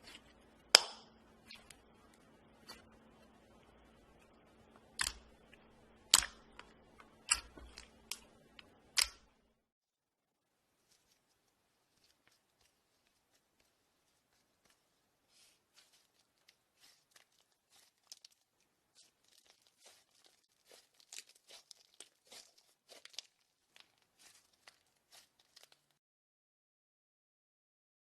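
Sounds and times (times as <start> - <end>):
slime crackling and clicking: 4.8 - 9.2.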